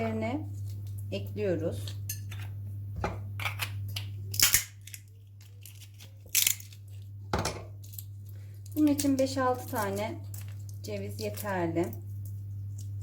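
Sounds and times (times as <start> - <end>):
steady low hum: 0.0 - 13.0
walnut shells cracking: 3.4 - 7.1.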